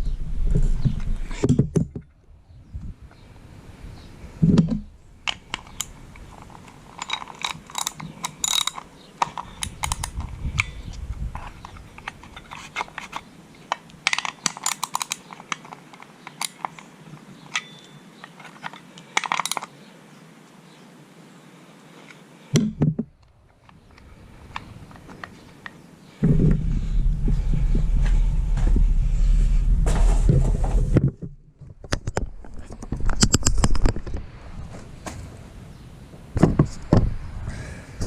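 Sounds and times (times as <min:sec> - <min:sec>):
small metal parts clicking: 0:05.2 - 0:19.7
low thump: 0:26.2 - 0:31.4.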